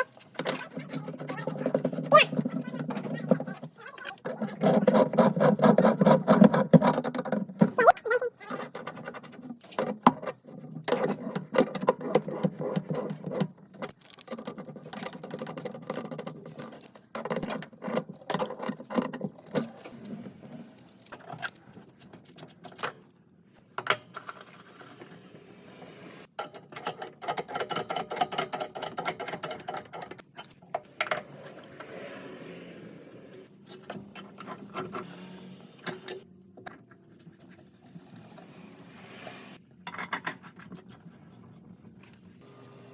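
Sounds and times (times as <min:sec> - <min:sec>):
hand tools clicking and rattling: 0:00.0 - 0:20.0, 0:26.4 - 0:31.3.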